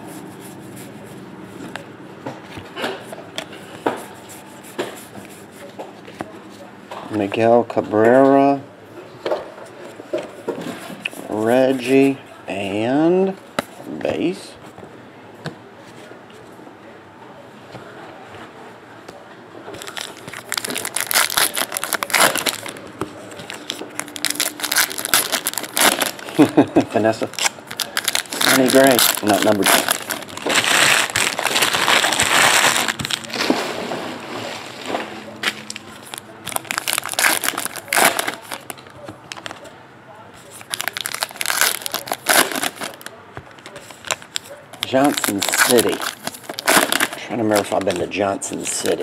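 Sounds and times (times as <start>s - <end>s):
plastic foil wrappers tearing: 19.8s - 33.6s, 35.4s - 39.6s, 40.5s - 43.1s, 43.8s - 49.0s.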